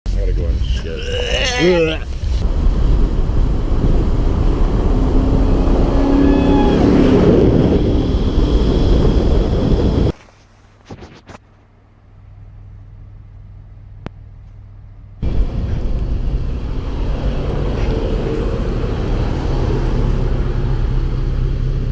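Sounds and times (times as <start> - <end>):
wind buffeting microphone: 2.1 - 10.2.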